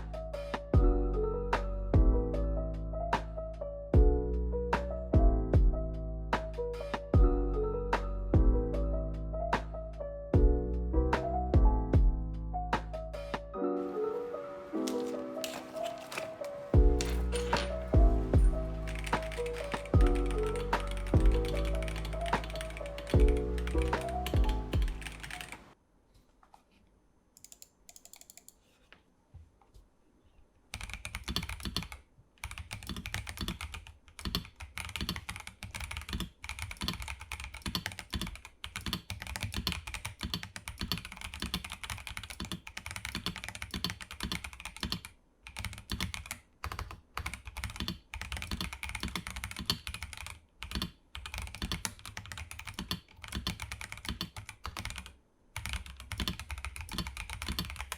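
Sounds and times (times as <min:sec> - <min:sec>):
mechanical keyboard typing: 0:14.8 - 0:25.8, 0:27.4 - 0:28.6, 0:30.7 - 0:57.9.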